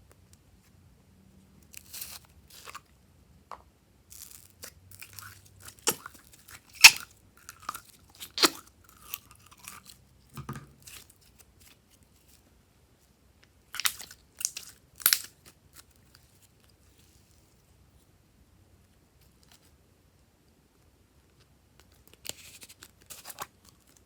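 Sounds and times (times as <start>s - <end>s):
slime wet pops and crackles: 4.2s - 9.8s, 13.8s - 15.5s.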